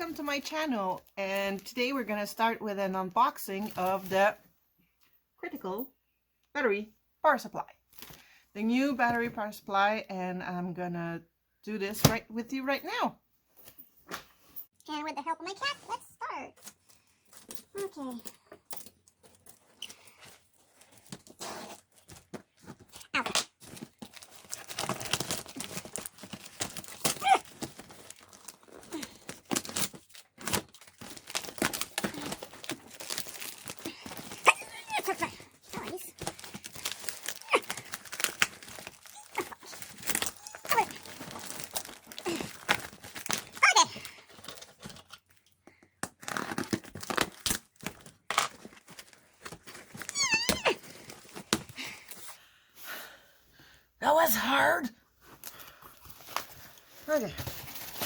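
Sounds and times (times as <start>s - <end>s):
packaging crinkling and tearing: 19.2s - 52.3s.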